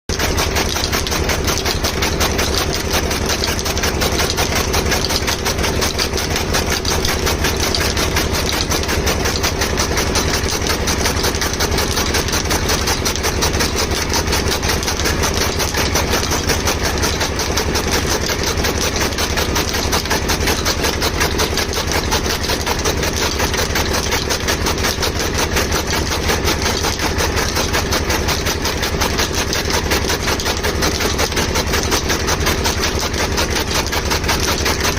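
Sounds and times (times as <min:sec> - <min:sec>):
chaff cutter chopping fodder: 0:00.1 - 0:34.9.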